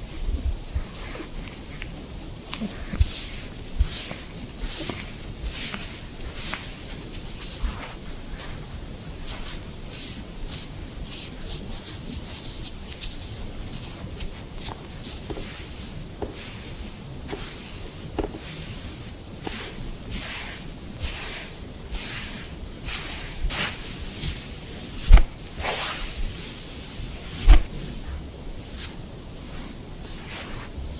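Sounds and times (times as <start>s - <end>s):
wet wipe rubbing fur: 9.2s - 30.7s
dull thump: 25.1s - 25.5s, 27.4s - 27.8s.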